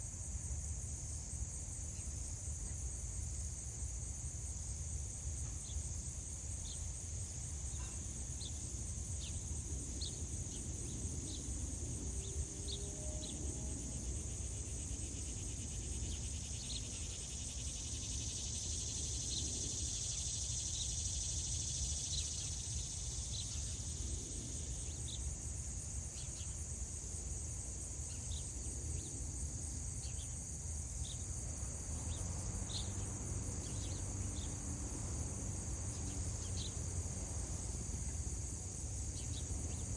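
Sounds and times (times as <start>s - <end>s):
short insect chirps: 14.1s - 25.2s.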